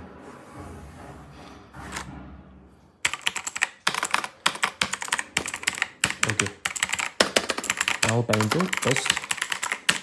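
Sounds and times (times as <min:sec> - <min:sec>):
mechanical keyboard clicking: 0:03.1 - 0:10.0.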